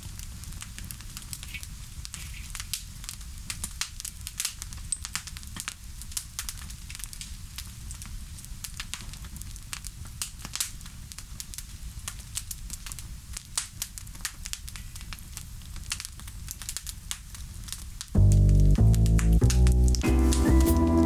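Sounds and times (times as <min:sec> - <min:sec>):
bonfire crackling and popping: 0:00.0 - 0:21.0
steady low rumble: 0:18.2 - 0:21.0.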